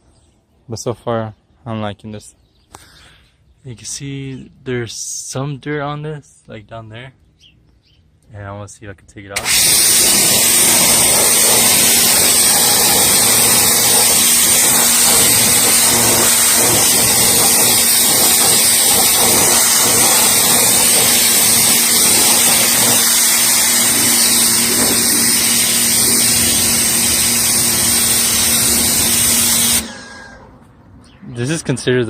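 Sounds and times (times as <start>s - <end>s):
pressure washer jet hissing: 9.4s - 30.4s
motor and pump hum: 9.4s - 30.5s.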